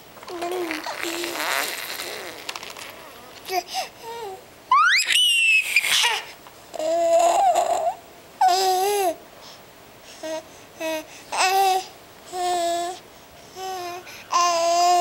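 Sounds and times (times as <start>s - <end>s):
baby babbling: 0.3s - 4.4s, 5.6s - 9.2s, 10.2s - 13.0s, 13.6s - 15.0s.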